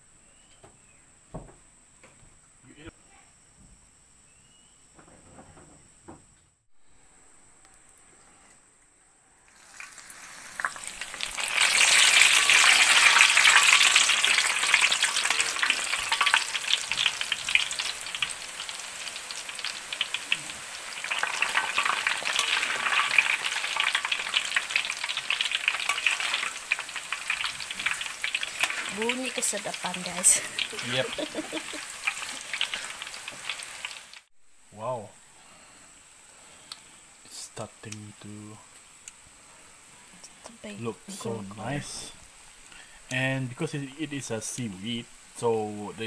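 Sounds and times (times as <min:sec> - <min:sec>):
food deep-frying in hot oil: 0:09.4 - 0:34.9.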